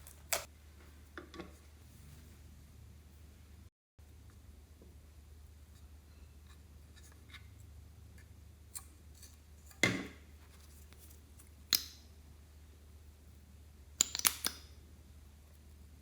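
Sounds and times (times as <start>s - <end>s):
sticky slime clicks: 14.0s - 14.7s.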